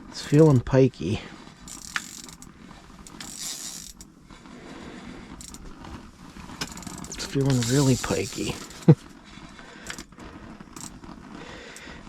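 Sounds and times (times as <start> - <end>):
fishing reel whirring and clicking: 1.6 - 4.1, 5.3 - 5.8, 6.5 - 9.0, 9.8 - 11.0.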